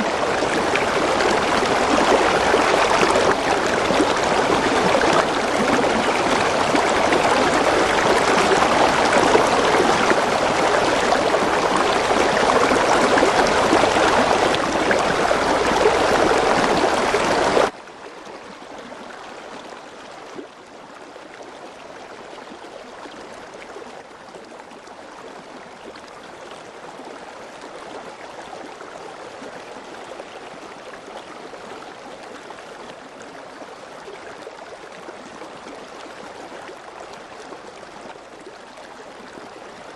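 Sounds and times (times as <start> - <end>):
heavy rain: 0.0 - 17.8.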